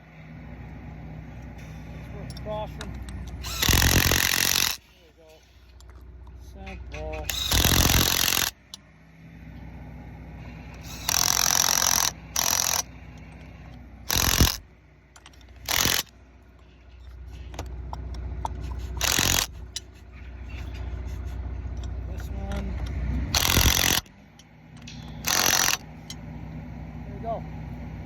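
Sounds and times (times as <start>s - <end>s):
impact wrench bursts: 3.2s - 5.9s, 7.3s - 8.8s, 10.7s - 13.4s, 14.0s - 16.2s, 18.8s - 19.9s, 23.3s - 24.1s, 25.0s - 26.2s.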